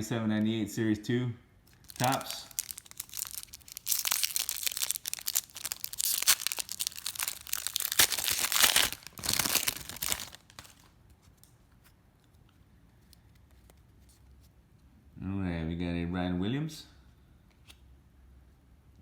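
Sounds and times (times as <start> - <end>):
card pack wrapper tearing: 1.7 - 10.9.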